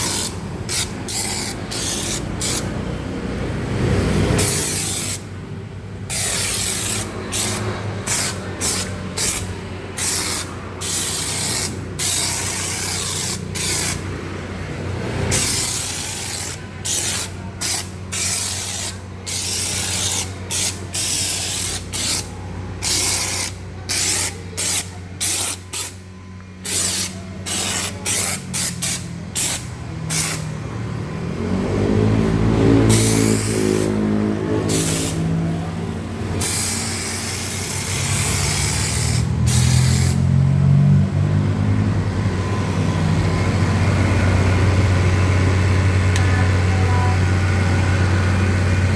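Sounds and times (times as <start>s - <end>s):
foam sprayer hiss bursts: 0.0s - 2.8s, 4.3s - 5.3s, 6.1s - 14.0s, 15.2s - 26.0s, 26.6s - 30.4s, 34.7s - 35.2s, 36.4s - 40.2s
loud pitched machine sound: 6.0s - 40.5s.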